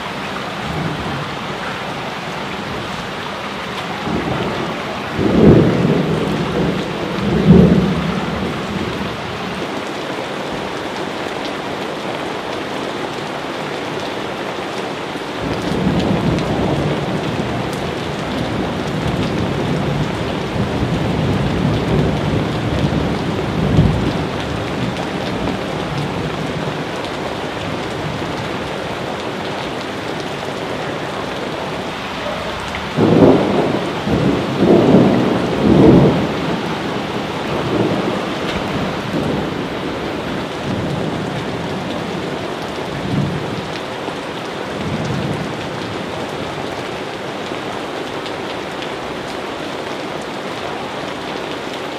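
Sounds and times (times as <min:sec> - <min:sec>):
thunder rumbling: 0:00.0 - 0:09.8, 0:15.4 - 0:43.8
heavy rain: 0:00.0 - 0:51.9.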